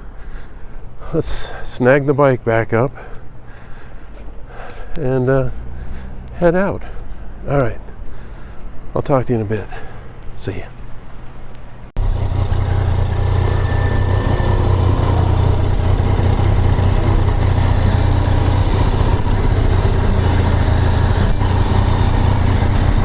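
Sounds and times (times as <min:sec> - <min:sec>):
motorcycle engine running: 0:12.0 - 0:23.0.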